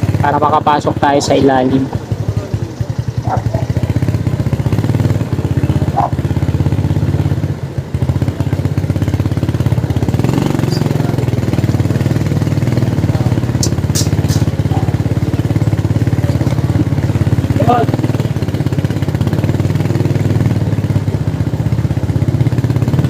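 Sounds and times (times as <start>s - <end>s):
small motorcycle engine running: 0.0s - 23.0s
sharp high clicks: 13.6s - 14.5s.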